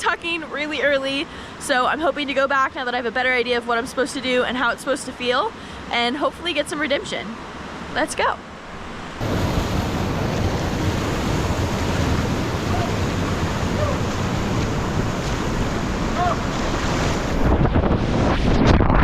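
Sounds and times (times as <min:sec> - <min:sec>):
waterfall roaring: 0:09.2 - 0:17.6.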